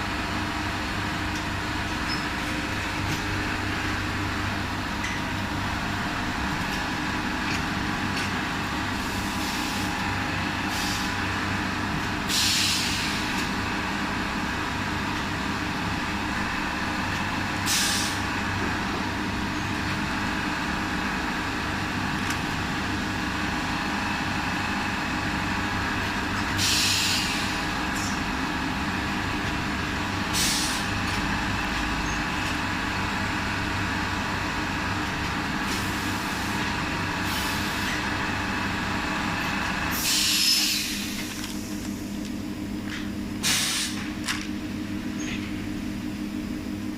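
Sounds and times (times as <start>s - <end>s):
short air hisses: 12.3s - 13.2s, 17.7s - 18.2s, 26.6s - 27.6s, 30.4s - 30.8s, 40.0s - 41.2s, 43.4s - 44.0s.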